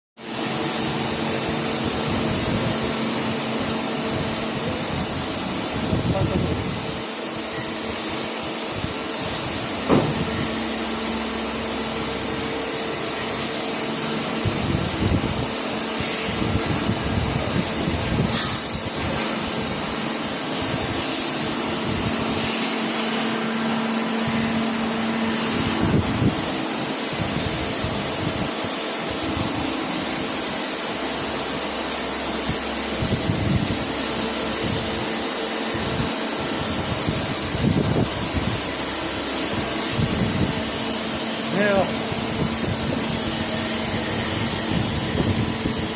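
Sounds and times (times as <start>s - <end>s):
faint high whine: 0.2s - 45.9s
machine mechanical hum: 0.2s - 45.9s
scattered knocks: 9.8s - 10.5s.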